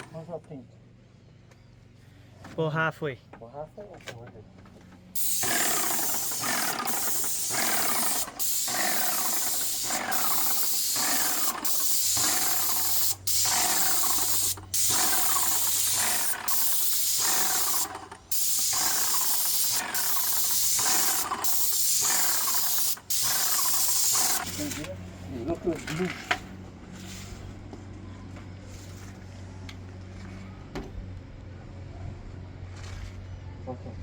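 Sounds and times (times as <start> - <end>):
paint sprayer hissing: 5.2 - 25.0.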